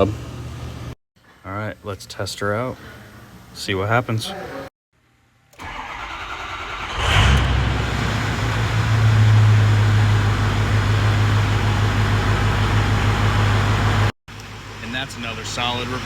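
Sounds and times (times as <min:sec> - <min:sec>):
diesel engine starting and idling: 0:05.6 - 0:16.0.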